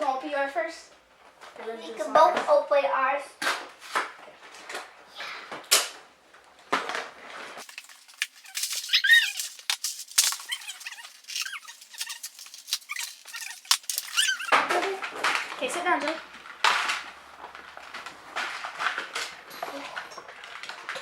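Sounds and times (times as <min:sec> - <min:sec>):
plastic packaging crinkling and tearing: 0:07.6 - 0:15.6, 0:16.2 - 0:21.0
high squeaks and whines: 0:07.8 - 0:14.7.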